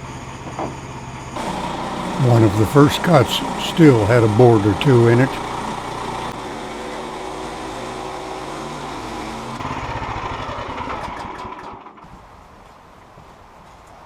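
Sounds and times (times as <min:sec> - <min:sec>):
small gasoline engine running: 0:01.4 - 0:12.1.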